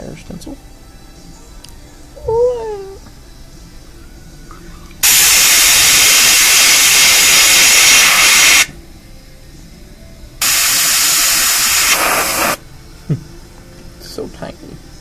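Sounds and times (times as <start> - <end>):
airbrush hissing: 5.0 - 8.8, 10.4 - 12.6.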